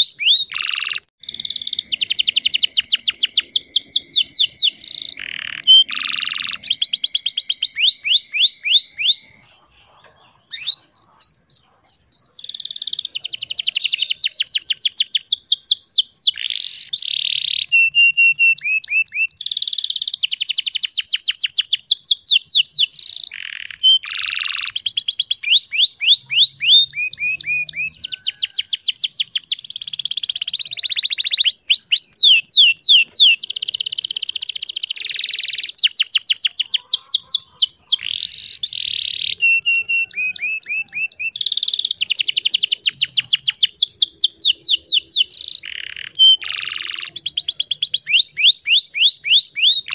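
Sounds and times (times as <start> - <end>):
canary singing trills: 0.0 - 49.9.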